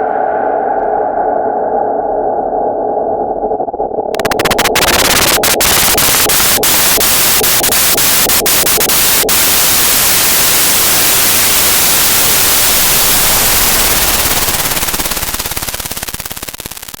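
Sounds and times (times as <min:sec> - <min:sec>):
fast even flutter: 0:04.1 - 0:09.2, 0:12.5 - 0:17.0
harsh hissing static: 0:04.1 - 0:17.0.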